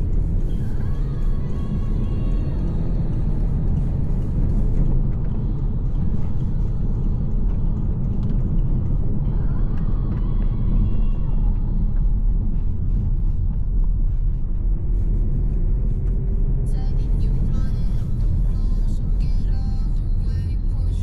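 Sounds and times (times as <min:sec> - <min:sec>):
car engine and tyres rumbling: 0:00.0 - 0:21.0.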